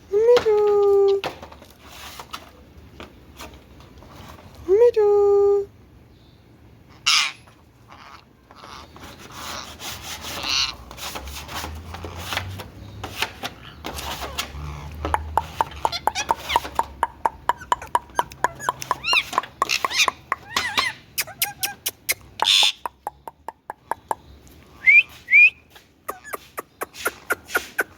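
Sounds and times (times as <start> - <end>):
parakeet squawking and chattering: 6.9 - 10.9, 13.6 - 24.3, 26.0 - 27.9.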